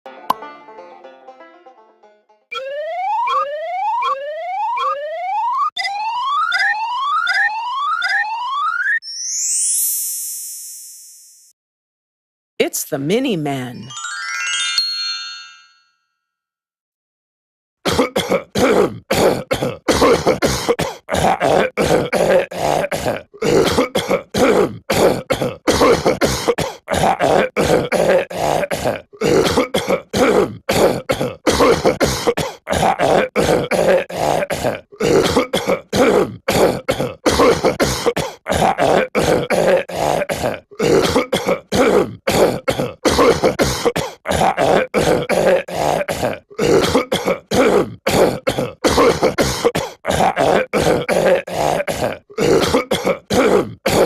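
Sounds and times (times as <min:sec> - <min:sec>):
cartoon voice coughing: 0:17.9 - 0:54.0.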